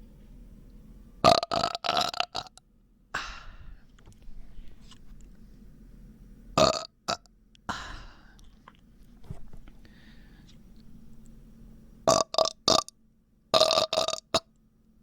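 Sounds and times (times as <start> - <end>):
person burping: 1.2 - 2.6, 6.6 - 7.2, 12.1 - 12.9, 13.6 - 14.4
airy breaths out: 3.2 - 3.9, 9.8 - 10.6.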